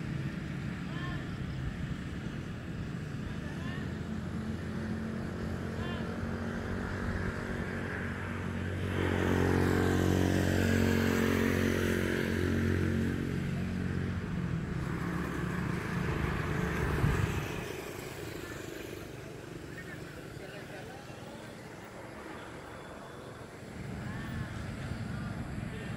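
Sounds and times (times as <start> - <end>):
passing vehicle engine: 0.0 - 25.9.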